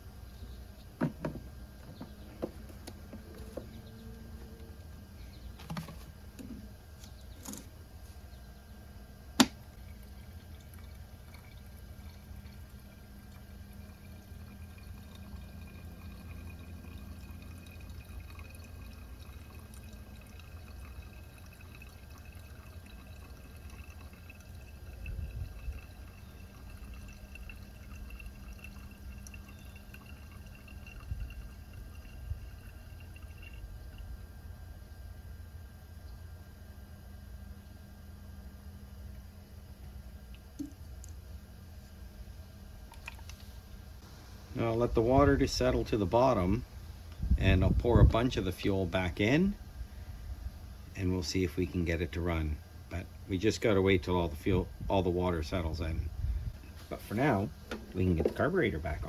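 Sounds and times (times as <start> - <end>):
liquid pouring into container: 9.4 - 34.3, 40.3 - 41.2, 42.8 - 43.4.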